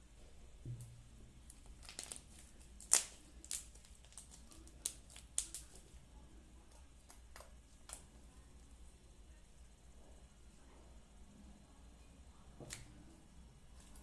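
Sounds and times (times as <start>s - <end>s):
slime popping and crackling: 1.5s - 5.9s.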